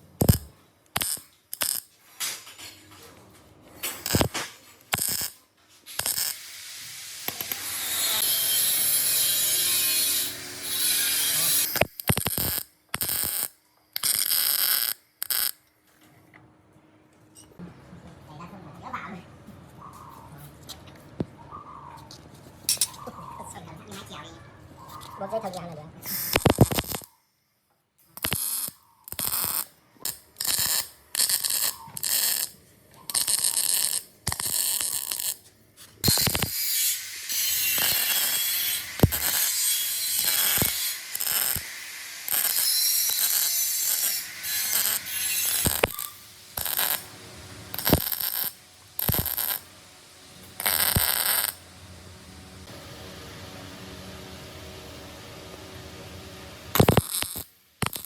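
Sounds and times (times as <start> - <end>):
zip ties ratcheting: 11.6 - 15.6, 26.1 - 27.1, 28.2 - 32.5, 40.2 - 41.7.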